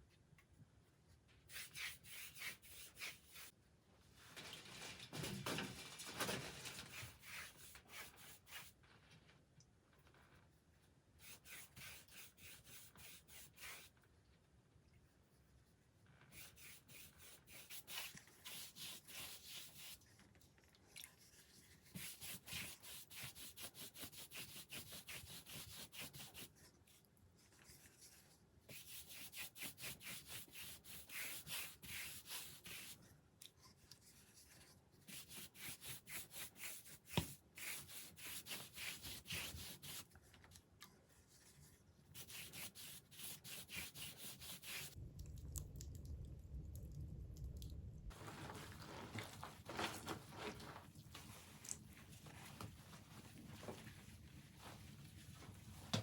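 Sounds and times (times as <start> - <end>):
rubbing strokes: 1.5 - 3.5, 27.7 - 33.0, 34.1 - 40.1, 41.1 - 45.0.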